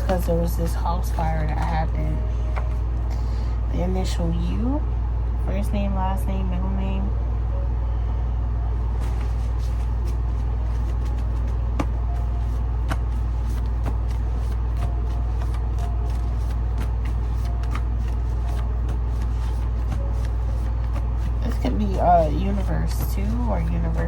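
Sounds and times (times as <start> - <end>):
cards being shuffled: 0.0 - 2.9, 9.0 - 24.0
low rumble: 0.0 - 24.0.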